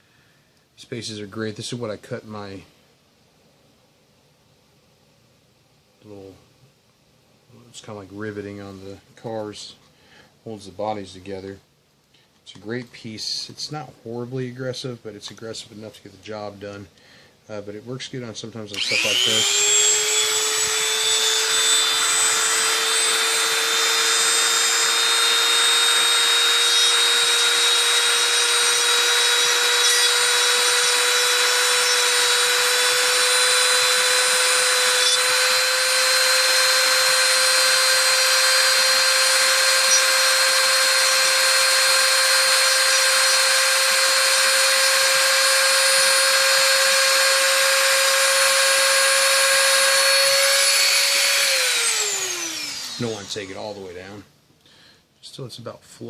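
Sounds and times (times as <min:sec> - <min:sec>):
rotary tool grinding plastic: 0:18.8 - 0:53.8.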